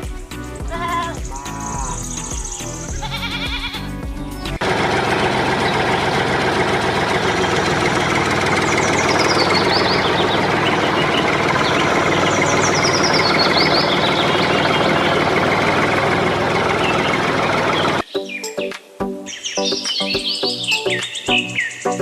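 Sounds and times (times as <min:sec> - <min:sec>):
high falling chirps: 0:00.3 - 0:04.5, 0:07.4 - 0:18.7.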